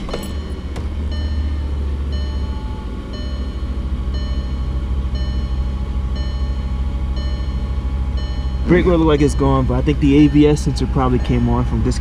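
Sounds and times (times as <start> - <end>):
car engine idling: 0.0 - 12.0
dashboard warning chime: 0.0 - 12.0.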